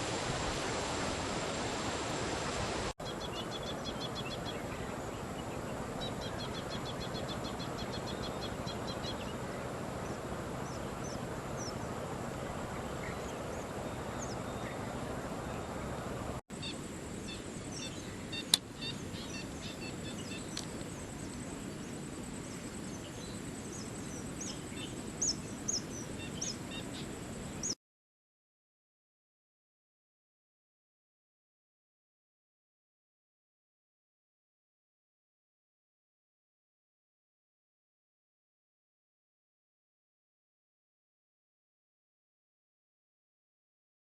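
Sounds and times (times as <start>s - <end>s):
steady outdoor hiss: 0.0s - 27.8s
wild birds calling: 3.0s - 27.8s.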